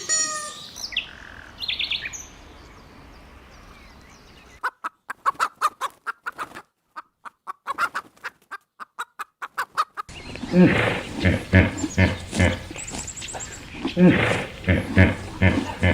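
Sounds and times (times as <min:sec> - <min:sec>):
outdoor background noise: 0:00.0 - 0:15.9
high bird chirps: 0:10.1 - 0:15.9.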